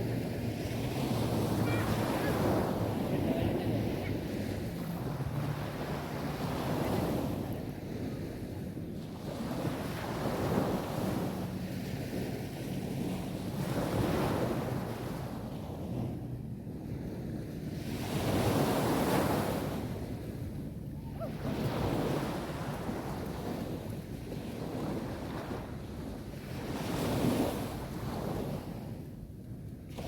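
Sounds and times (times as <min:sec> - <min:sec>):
waves breaking on beach: 0:00.0 - 0:16.1, 0:16.8 - 0:29.0
wind on microphone: 0:00.0 - 0:30.0.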